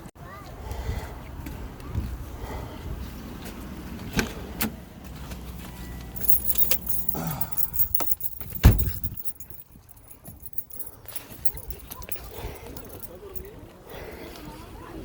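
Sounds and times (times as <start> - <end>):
keys jangling: 6.2 - 13.5.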